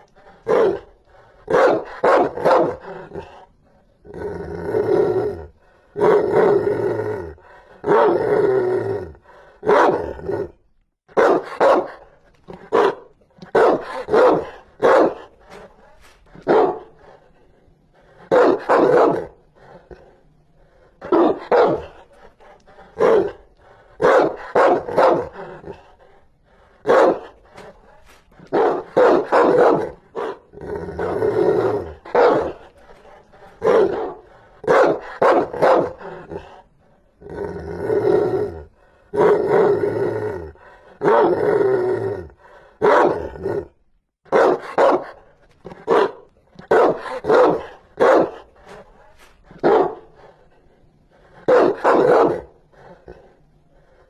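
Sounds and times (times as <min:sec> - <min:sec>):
dog barking fiercely: 0:00.4 - 0:03.3, 0:07.8 - 0:08.3, 0:09.6 - 0:10.2, 0:11.1 - 0:15.3, 0:16.4 - 0:17.1, 0:18.3 - 0:19.4, 0:21.0 - 0:22.1, 0:23.0 - 0:25.9, 0:26.8 - 0:27.4, 0:28.4 - 0:32.7, 0:33.6 - 0:36.4, 0:41.0 - 0:41.4, 0:42.8 - 0:43.4, 0:44.3 - 0:48.5, 0:49.5 - 0:50.2, 0:51.4 - 0:52.6.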